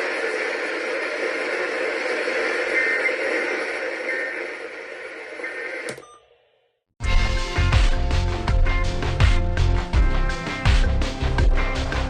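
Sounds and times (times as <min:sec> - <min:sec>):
music with steady low beat: 0:07.0 - 0:12.0.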